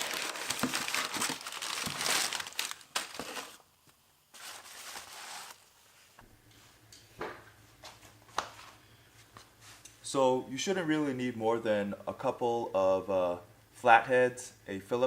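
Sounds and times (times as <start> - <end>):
packaging crinkling: 0.0 - 3.7, 4.3 - 5.7.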